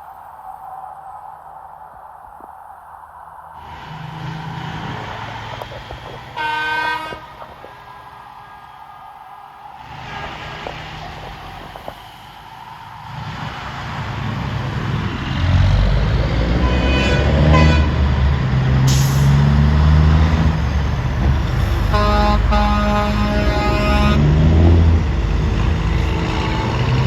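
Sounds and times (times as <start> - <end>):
truck engine passing: 3.5 - 27.0
truck horn tooting: 6.4 - 7.4, 16.6 - 18.0, 21.8 - 25.0, 25.8 - 27.0.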